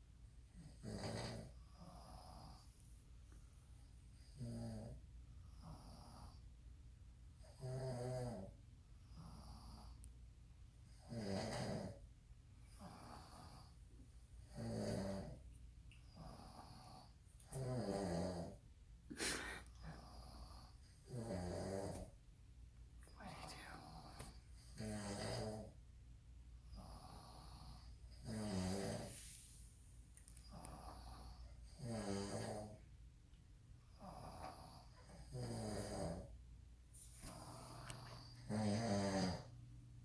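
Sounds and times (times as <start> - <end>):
people snoring loudly: 0.8 - 2.6, 11.0 - 12.0, 14.5 - 15.4, 24.8 - 25.7, 26.8 - 29.2, 30.5 - 32.8, 34.0 - 36.3, 37.3 - 39.5.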